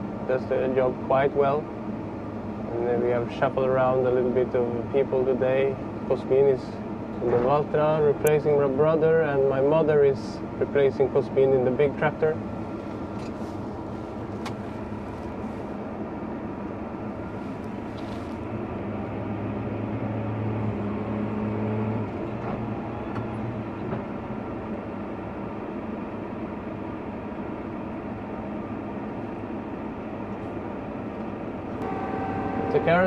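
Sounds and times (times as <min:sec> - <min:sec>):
tractor engine running: 0:31.7 - 0:33.0.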